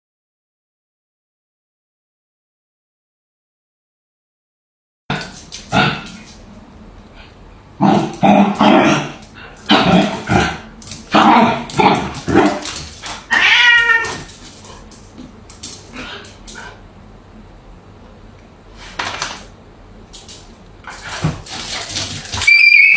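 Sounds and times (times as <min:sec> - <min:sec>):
cat meowing: 0:13.3 - 0:14.4, 0:22.4 - 0:22.9.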